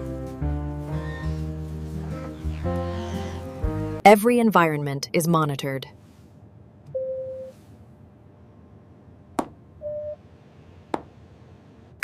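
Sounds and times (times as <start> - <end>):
low steady hum: 4.0 - 12.0.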